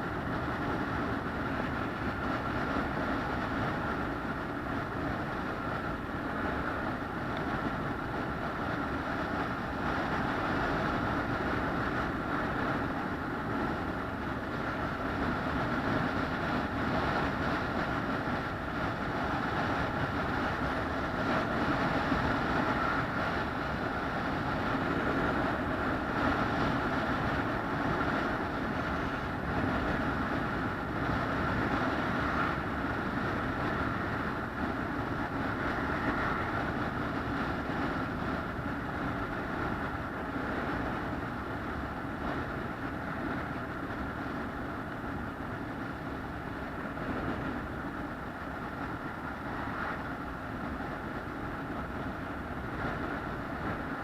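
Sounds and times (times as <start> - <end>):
vehicle running drone: 0.0 - 54.0.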